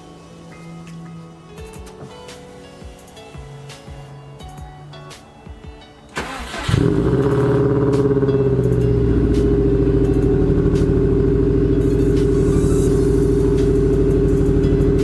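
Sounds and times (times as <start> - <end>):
car engine starting and idling: 6.1 - 15.0.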